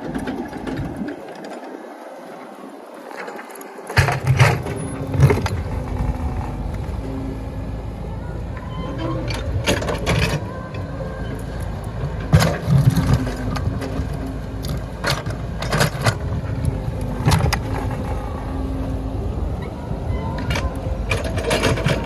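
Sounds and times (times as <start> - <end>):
excavator machine rumble: 0.0 - 22.0.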